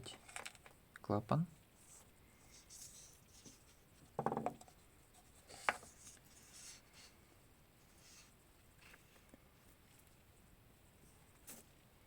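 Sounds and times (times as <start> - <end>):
soft rubbing and scraping of parts: 1.7 - 10.3.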